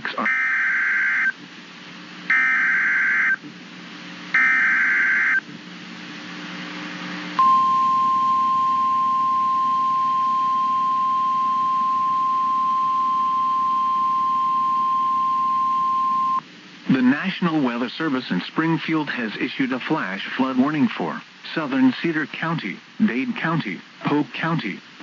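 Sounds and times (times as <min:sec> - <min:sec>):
steady warning alarm tone: 0:00.2 - 0:01.4, 0:02.3 - 0:03.4, 0:04.4 - 0:05.4, 0:07.4 - 0:16.4.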